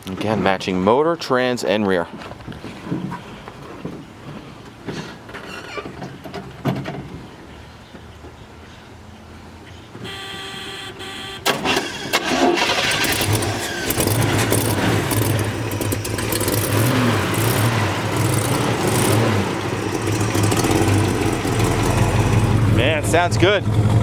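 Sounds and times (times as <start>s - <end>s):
starter cranking: 11.4s - 24.0s
car engine lumpy idle: 13.1s - 24.0s.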